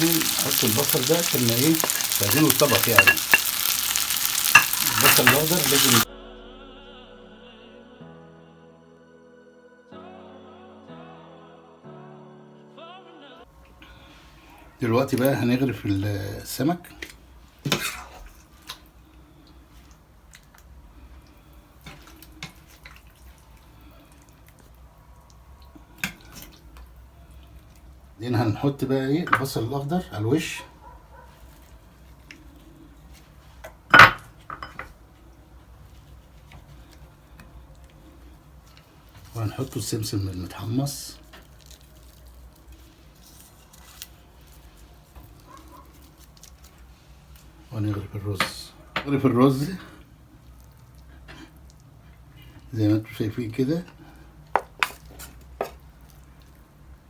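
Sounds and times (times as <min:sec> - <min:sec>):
light kitchen rustles: 0:00.0 - 0:06.1.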